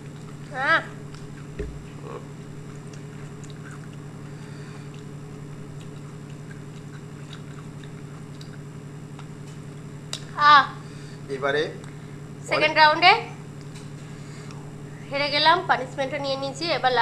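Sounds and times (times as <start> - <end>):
person chewing raw potato: 0.0 - 10.4.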